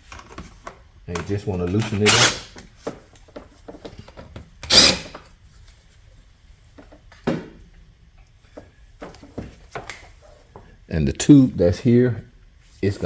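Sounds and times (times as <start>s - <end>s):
hand tools clattering on metal: 1.7s - 2.4s.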